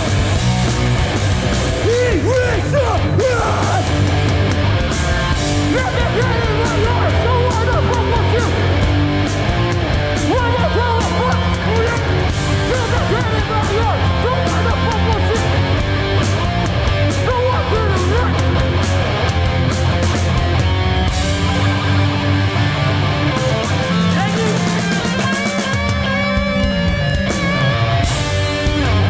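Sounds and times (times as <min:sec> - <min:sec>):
bass guitar: 0:00.0 - 0:29.0
distorted electric guitars: 0:00.0 - 0:29.0
drums with cymbal hits: 0:00.0 - 0:29.0.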